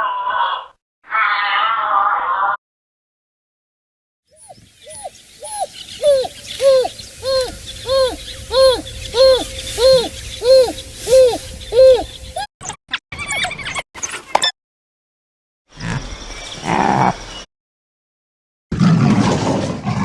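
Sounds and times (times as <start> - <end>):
animal hooting call: 4.4 - 12.5.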